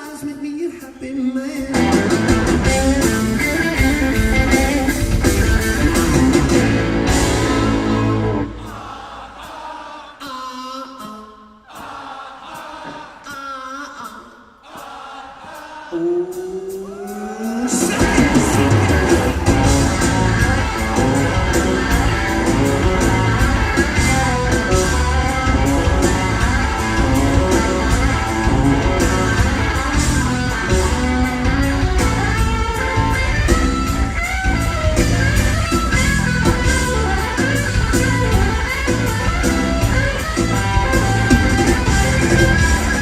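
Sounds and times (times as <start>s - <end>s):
electric guitar: 1.6s - 8.6s, 17.6s - 43.0s
drums keeping a beat: 1.6s - 10.3s, 14.0s - 43.0s.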